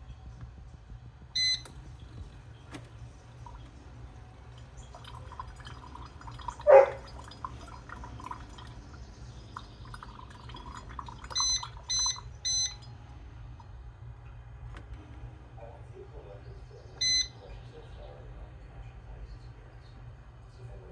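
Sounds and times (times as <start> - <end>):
coffee maker beeps: 1.3 - 2.8, 9.5 - 12.9, 16.9 - 17.6
faint ticks and drips: 4.5 - 12.9.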